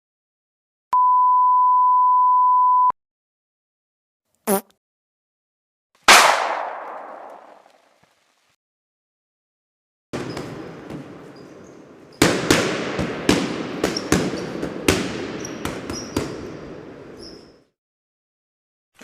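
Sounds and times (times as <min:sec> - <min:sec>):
sharp pops and cracks: 0:06.0 - 0:08.6
loud bang: 0:06.1 - 0:07.5
hissing crackle: 0:06.3 - 0:08.6.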